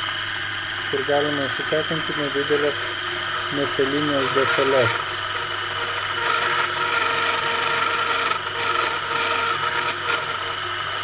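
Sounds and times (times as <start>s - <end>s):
small motor whine: 0.0s - 11.0s
cutting scraping hiss: 0.9s - 6.6s.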